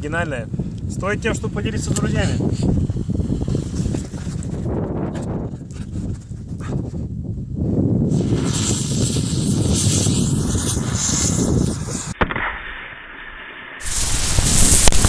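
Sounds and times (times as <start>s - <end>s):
fireworks hissing and crackling: 2.0s - 4.5s, 8.1s - 15.0s.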